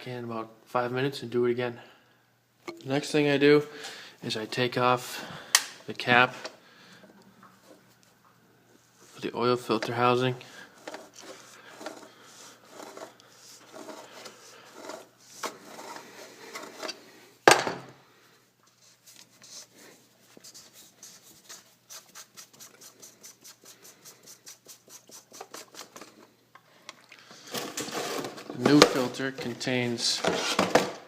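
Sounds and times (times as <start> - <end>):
tool clicking and scraping: 10.7 - 17.1, 21.5 - 26.3.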